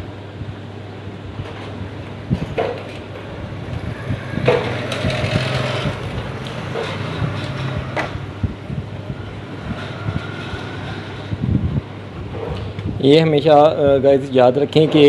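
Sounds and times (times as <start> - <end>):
handling clicks and knocks: 1.4 - 8.3
rustling clatter: 1.4 - 13.0.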